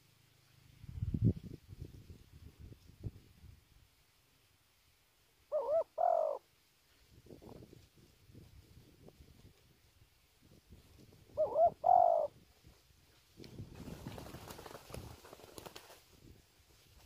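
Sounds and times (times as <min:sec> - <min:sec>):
dove cooing: 0:05.5 - 0:06.4, 0:11.4 - 0:12.4.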